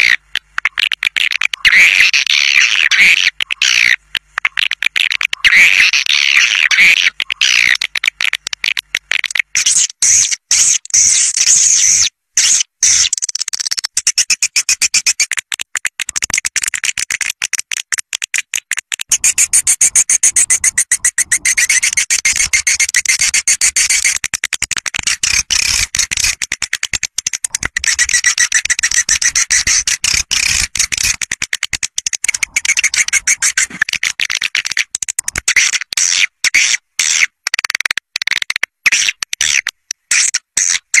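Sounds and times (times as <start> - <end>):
swiftlets twittering: 19.1 - 24.2, 27.5 - 31.2.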